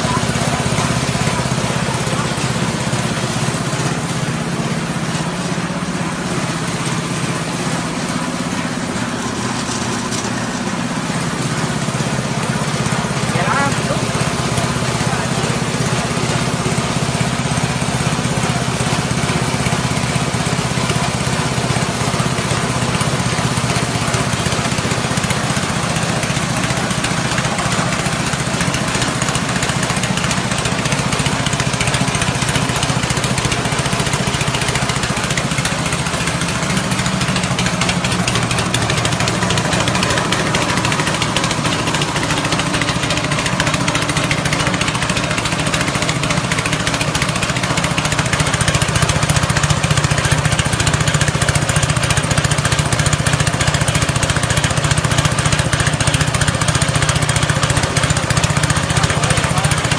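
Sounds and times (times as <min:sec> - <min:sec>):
grinder whirring and rattling: 0:00.0 - 0:59.9
petrol engine droning: 0:00.0 - 0:59.9.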